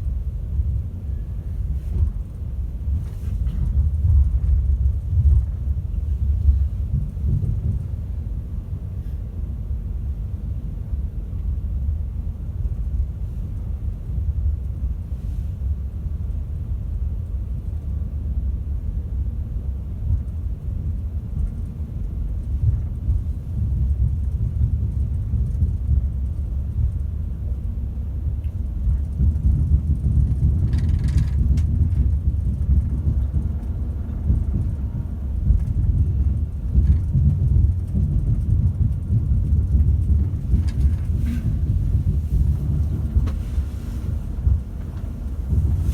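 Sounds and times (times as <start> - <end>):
train rumbling from inside carriage: 0.0 - 45.9.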